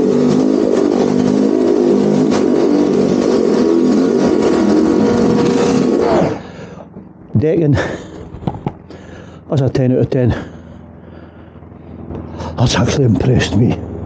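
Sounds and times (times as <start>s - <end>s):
pressure washer running: 0.0s - 7.2s.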